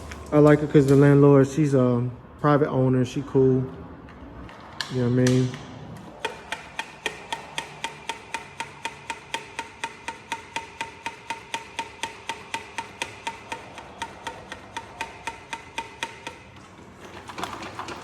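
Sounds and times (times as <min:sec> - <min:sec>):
clicking beat music: 0:06.2 - 0:16.4.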